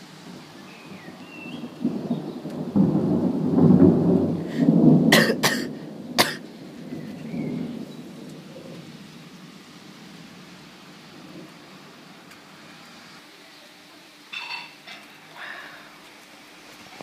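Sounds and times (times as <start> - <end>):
rolling thunder rumble: 0.0 - 12.6
sharp thunder cracks: 0.9 - 9.4.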